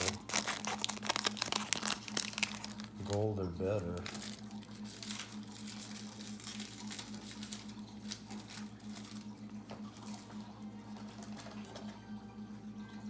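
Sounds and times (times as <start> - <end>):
cards scraping and tapping: 0.0 - 3.2
steady low hum: 0.0 - 13.0.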